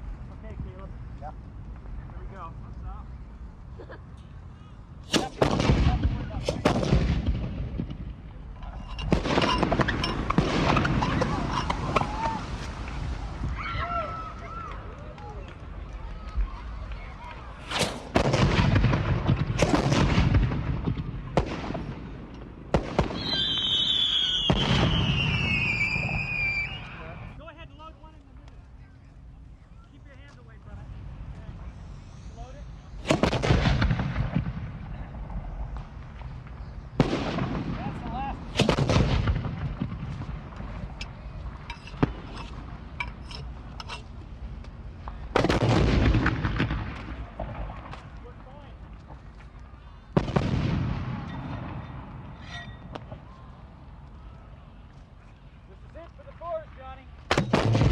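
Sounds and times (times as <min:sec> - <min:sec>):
distant rifle shots: 0:05.1 - 0:08.0, 0:17.7 - 0:22.1, 0:33.0 - 0:34.6, 0:37.0 - 0:40.2, 0:45.4 - 0:47.9, 0:57.3 - 0:57.9
rifle shots with echo: 0:05.1 - 0:08.0, 0:17.7 - 0:23.3, 0:33.0 - 0:34.7, 0:37.0 - 0:40.2, 0:57.3 - 0:57.9
high whistling tone sliding down: 0:23.2 - 0:27.0.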